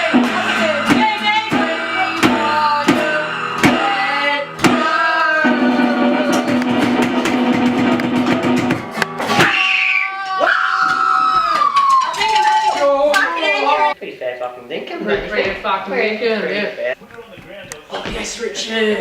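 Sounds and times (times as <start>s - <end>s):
rock song with singing: 0.0s - 7.0s
drum fill: 0.0s - 9.7s.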